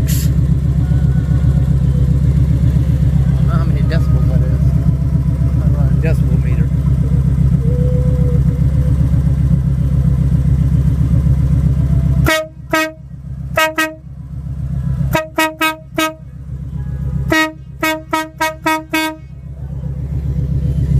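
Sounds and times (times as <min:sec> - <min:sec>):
motorcycle engine running: 0:00.0 - 0:20.9
trumpet air horn blasts: 0:12.2 - 0:14.1, 0:15.1 - 0:16.3, 0:17.2 - 0:19.4.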